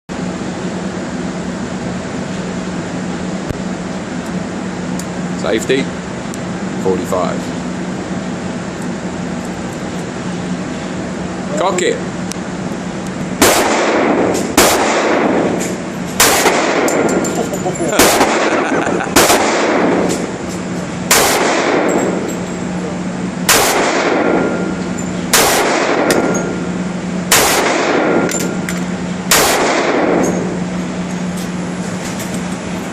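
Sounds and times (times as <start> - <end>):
steady low hum: 0.1 - 32.9
gunshots echoing: 13.4 - 15.6, 16.2 - 17.1, 17.9 - 20.3, 21.1 - 22.2, 23.5 - 24.6, 25.3 - 26.4, 27.3 - 28.3, 29.3 - 30.4.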